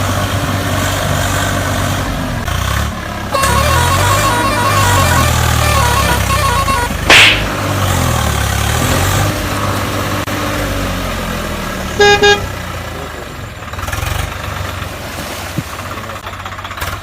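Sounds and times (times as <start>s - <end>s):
vehicle engine running: 0.0s - 17.0s
horn honks: 3.3s - 7.6s, 12.0s - 12.6s.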